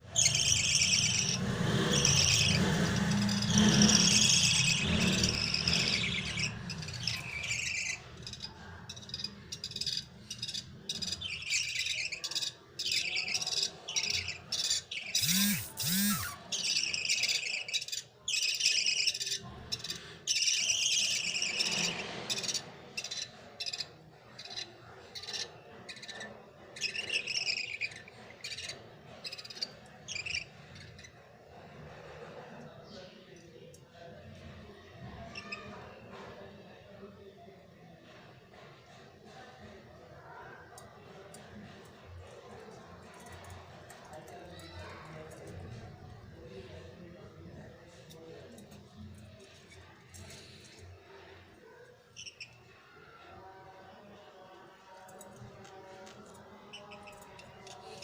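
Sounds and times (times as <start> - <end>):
budgerigars chattering: 0.1 - 17.7.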